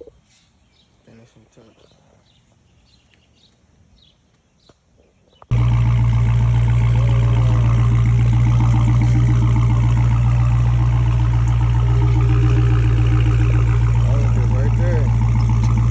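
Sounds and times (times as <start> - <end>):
car engine idling: 5.5 - 15.9.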